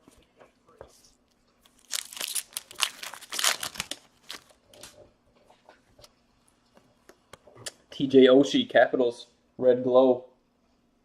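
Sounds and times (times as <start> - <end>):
foil wrapper crinkling and tearing: 1.6 - 5.0.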